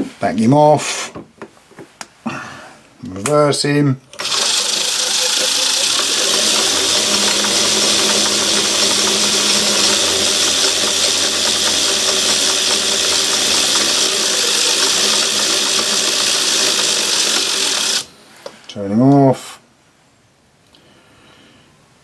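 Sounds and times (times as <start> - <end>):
lathe running with mechanical rattle: 4.1 - 18.1.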